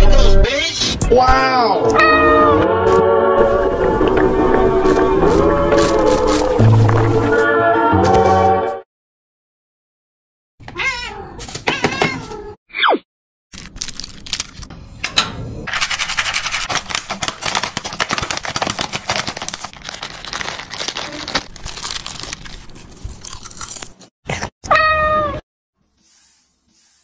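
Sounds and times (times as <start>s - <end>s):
cat meowing: 1.9s - 2.6s, 10.8s - 12.3s, 24.7s - 25.4s.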